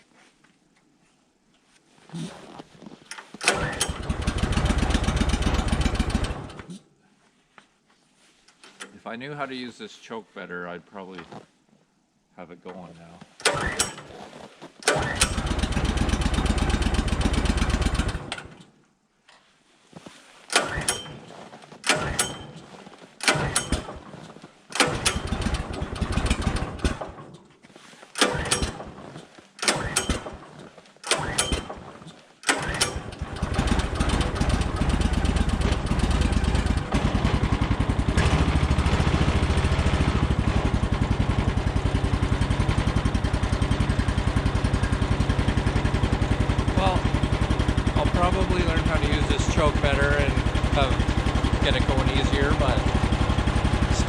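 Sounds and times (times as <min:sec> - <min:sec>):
gasoline engine starting and dying: 0:03.2 - 0:06.8, 0:13.4 - 0:18.7, 0:20.4 - 0:54.0
engine running steadily: 0:14.9 - 0:18.4, 0:32.5 - 0:54.0.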